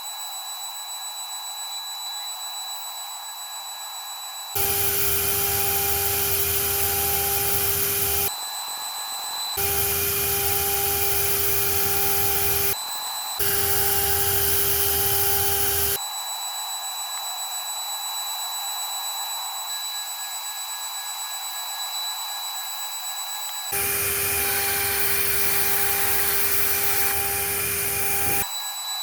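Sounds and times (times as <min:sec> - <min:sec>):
machine spindle whining: 0:04.6 - 0:08.3, 0:09.6 - 0:12.8, 0:13.4 - 0:16.0, 0:23.7 - 0:28.4.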